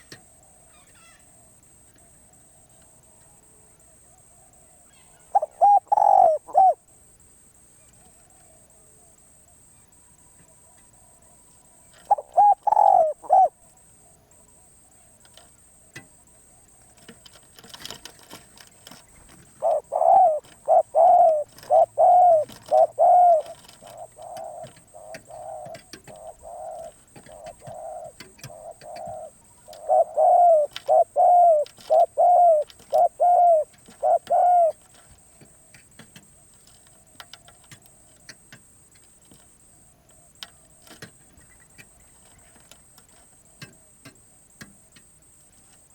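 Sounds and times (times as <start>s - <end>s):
dove cooing: 4.2s - 6.8s, 10.5s - 15.4s, 16.4s - 38.4s.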